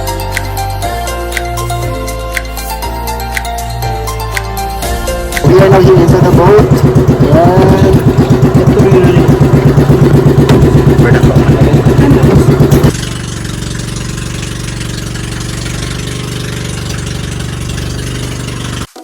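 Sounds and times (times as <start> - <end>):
boat engine chugging: 4.8 - 19.0.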